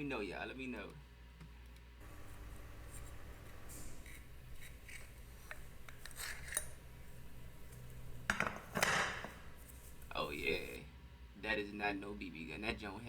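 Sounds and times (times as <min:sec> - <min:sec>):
low steady hum: 0:02.0 - 0:10.9
pistol metal clicks and scrapes: 0:02.1 - 0:10.7.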